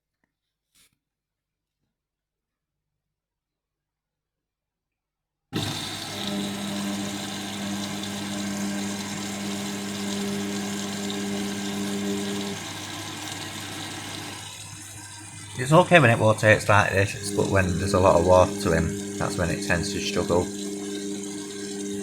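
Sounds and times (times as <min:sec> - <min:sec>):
washing machine motor hum: 0:05.6 - 0:22.0
water swishing in drum: 0:05.6 - 0:22.0.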